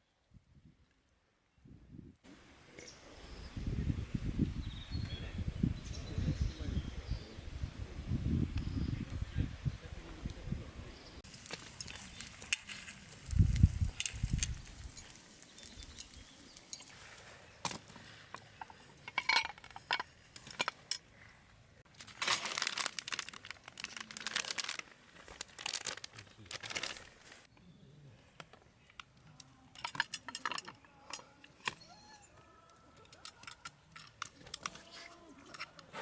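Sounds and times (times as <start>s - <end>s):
foil crinkling: 11.2s - 17.0s, 21.9s - 27.4s
cookware clinking: 18.6s - 20.1s.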